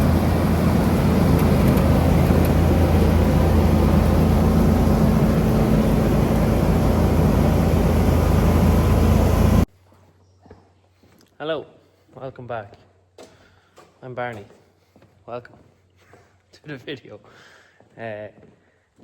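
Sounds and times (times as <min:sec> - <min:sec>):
diesel engine running: 0:00.0 - 0:09.7.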